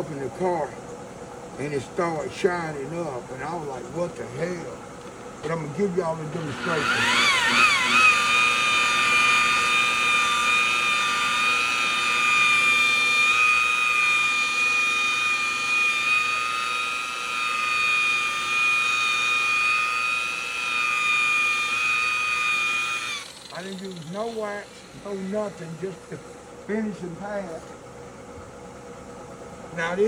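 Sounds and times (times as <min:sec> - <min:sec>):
electric car polisher whine: 0:06.3 - 0:26.3.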